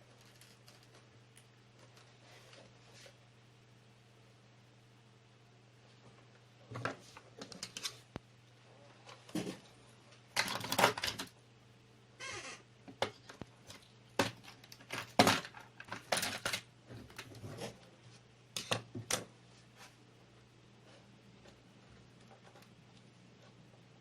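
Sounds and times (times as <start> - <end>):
clicks and knocks of plastic parts: 10.4 - 11.4, 12.9 - 17.4.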